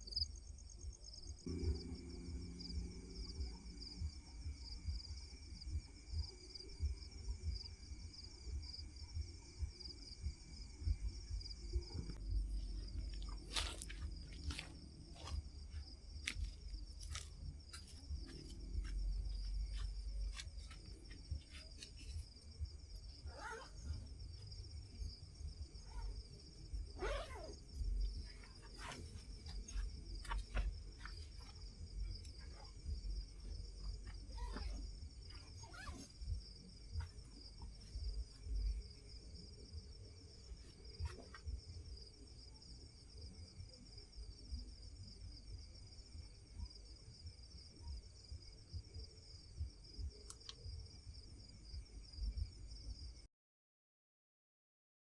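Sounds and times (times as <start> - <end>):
insects chirring: 0.0 - 53.3
low rumble: 10.8 - 27.0.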